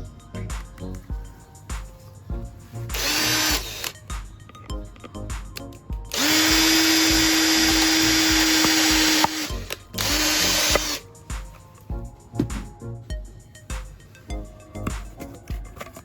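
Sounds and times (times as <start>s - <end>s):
background music with beat: 0.0s - 16.0s
electric drill running: 2.9s - 3.9s, 6.1s - 11.0s.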